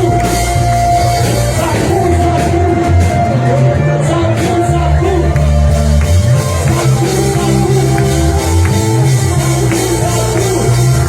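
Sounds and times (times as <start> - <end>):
worship band music: 0.0 - 11.0.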